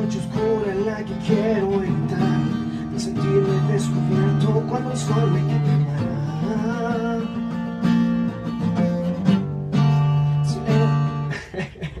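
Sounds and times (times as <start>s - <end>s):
acoustic guitar chords: 0.0s - 12.0s.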